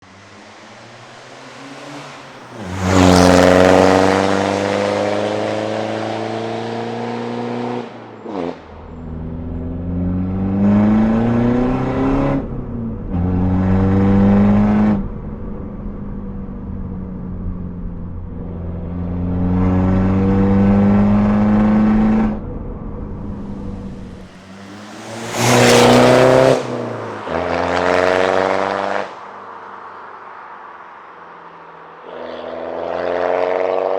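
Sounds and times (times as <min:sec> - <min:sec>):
diesel car accelerating hard: 0:00.1 - 0:29.4, 0:32.0 - 0:33.9.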